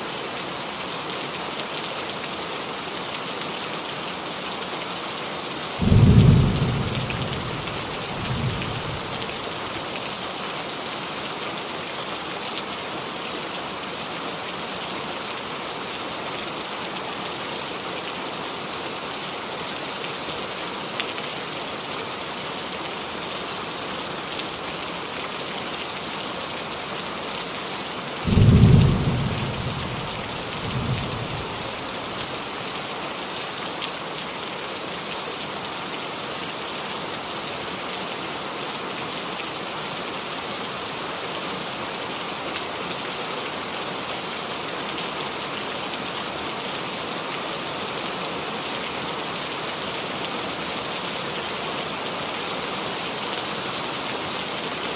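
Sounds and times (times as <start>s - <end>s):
rain falling on a roof: 0.0s - 54.9s
thunder clap: 5.8s - 9.2s, 28.3s - 31.2s
thunder rumble: 5.8s - 9.4s, 28.3s - 31.6s.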